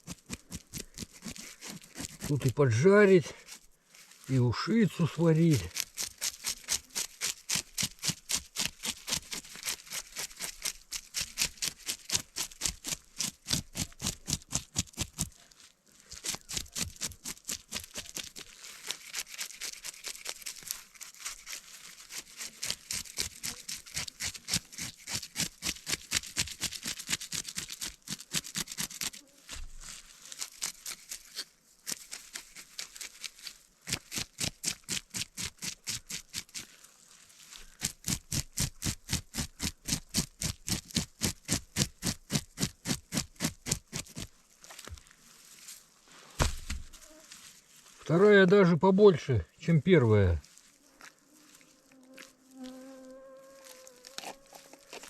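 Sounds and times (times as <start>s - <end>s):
knife scraping fish scales: 16.2s - 29.1s.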